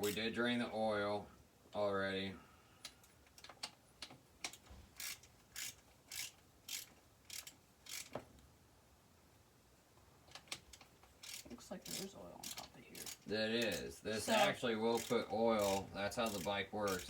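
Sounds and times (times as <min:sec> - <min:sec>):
ratchet wrench clicking: 0:04.5 - 0:08.2, 0:10.4 - 0:13.8, 0:14.9 - 0:17.0.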